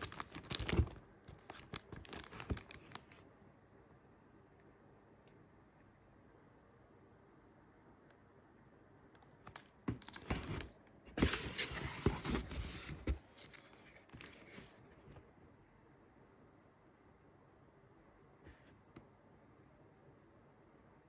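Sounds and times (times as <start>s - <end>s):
packaging tearing and crinkling: 0.0s - 3.2s.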